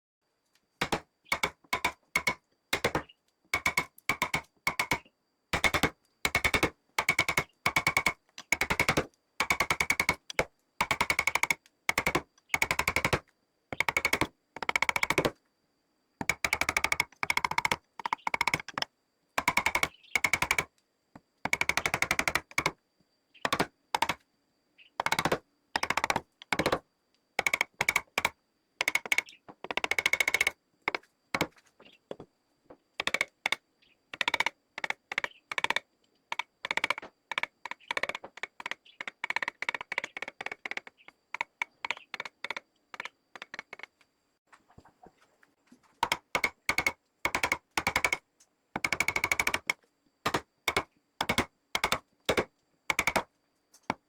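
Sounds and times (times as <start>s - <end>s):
power carving tool tapping wood: 0.8s - 15.4s, 16.2s - 20.7s, 21.5s - 22.8s, 23.4s - 24.2s, 25.0s - 26.8s, 27.4s - 32.3s, 46.0s - 48.2s, 48.8s - 53.3s.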